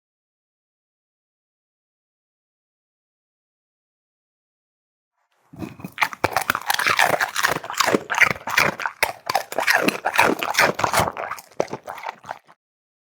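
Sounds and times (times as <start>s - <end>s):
pet crunching dry food: 5.6s - 12.6s.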